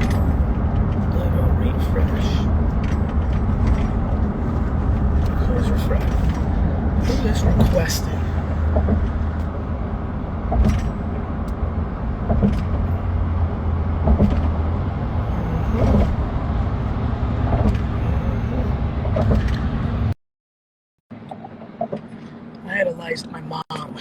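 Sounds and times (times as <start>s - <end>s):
vehicle engine rumble: 0.0s - 20.2s, 21.1s - 24.0s
light clicks and knocks: 14.0s - 14.7s.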